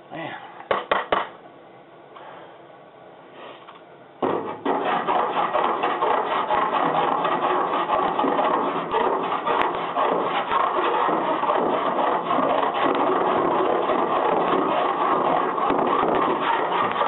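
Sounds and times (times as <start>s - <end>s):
file scraping metal solder: 4.6s - 17.0s.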